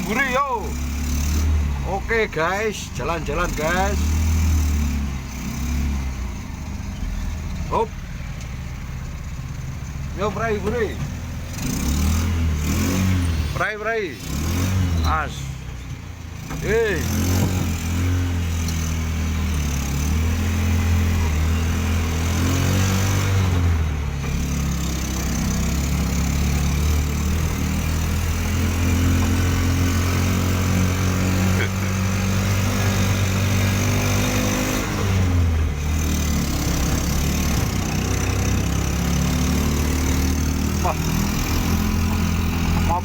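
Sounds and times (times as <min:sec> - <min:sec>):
motorcycle engine running under load: 0:23.2 - 0:30.9, 0:31.6 - 0:43.0.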